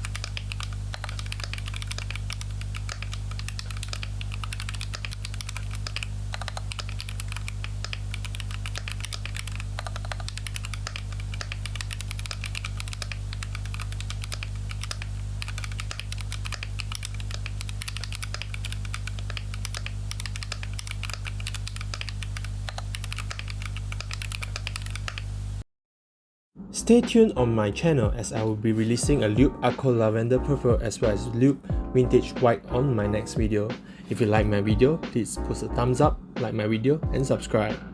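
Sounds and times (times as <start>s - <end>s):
fast typing on mechanical keyboard: 0.0s - 25.3s
steady low hum: 0.0s - 25.6s.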